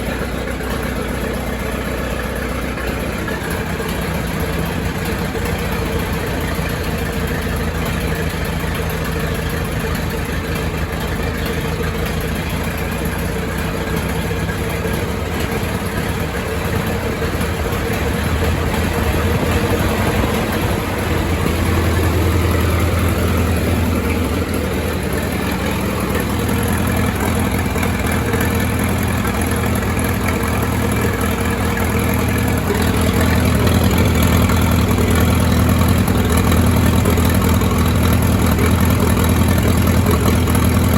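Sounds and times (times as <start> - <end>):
tractor engine idling: 0.0 - 40.9.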